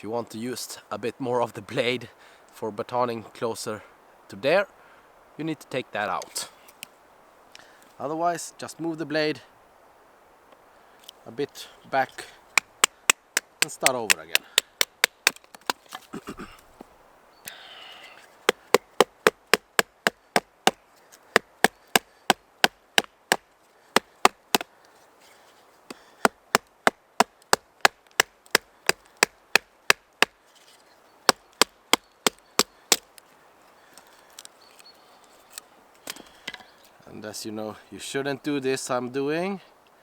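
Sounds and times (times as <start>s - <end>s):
baton tapping knife spine: 12.5s - 15.8s, 18.5s - 23.4s, 25.9s - 30.4s.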